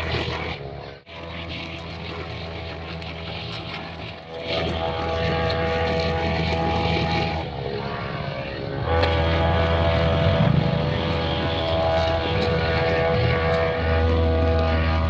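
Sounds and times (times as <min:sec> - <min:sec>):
brush cutter engine revving: 0:08.8 - 0:15.0.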